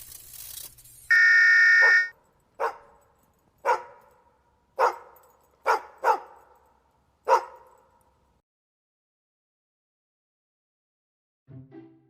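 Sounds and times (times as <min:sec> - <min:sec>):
puppy barking: 0:01.8 - 0:03.0, 0:03.6 - 0:04.2, 0:04.8 - 0:06.6, 0:07.3 - 0:08.0.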